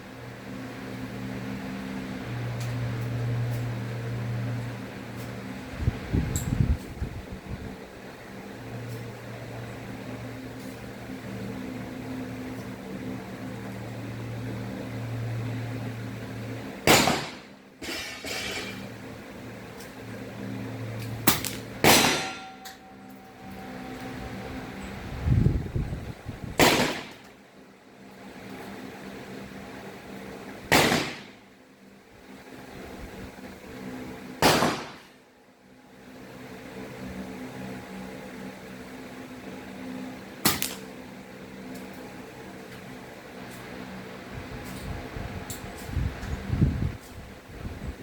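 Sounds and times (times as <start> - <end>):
steady low hum: 0.0 - 48.0
air rifle shot: 16.9 - 17.5, 21.3 - 22.4, 26.6 - 27.2, 30.7 - 31.4, 34.4 - 35.1.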